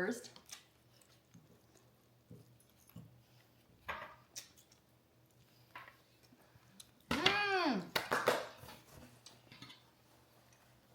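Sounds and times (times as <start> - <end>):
chewing and cutlery clicks: 4.3 - 5.4.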